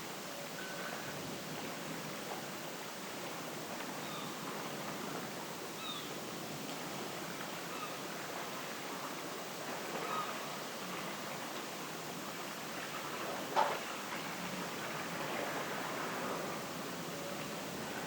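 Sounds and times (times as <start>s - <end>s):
outdoor ambient hiss: 0.0s - 18.0s.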